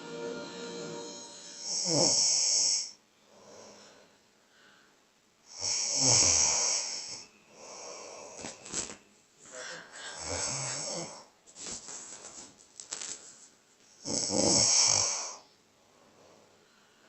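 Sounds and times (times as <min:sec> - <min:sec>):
person snoring: 0:01.4 - 0:03.0, 0:10.1 - 0:11.2, 0:14.0 - 0:15.4
quiet breathing: 0:01.5 - 0:05.2, 0:06.2 - 0:12.0, 0:14.9 - 0:17.0.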